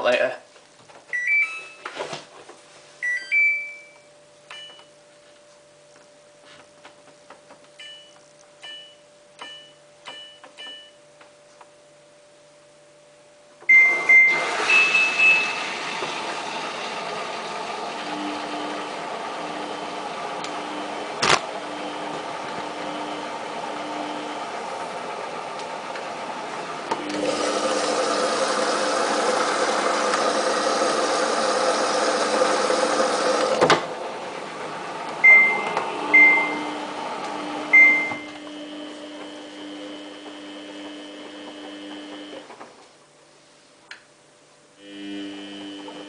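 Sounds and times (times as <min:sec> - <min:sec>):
washing machine beeps: 0:01.1 - 0:01.9, 0:03.0 - 0:04.9, 0:07.8 - 0:11.0, 0:13.7 - 0:15.9, 0:35.2 - 0:38.8
washing machine running: 0:13.7 - 0:42.8, 0:44.8 - 0:46.0.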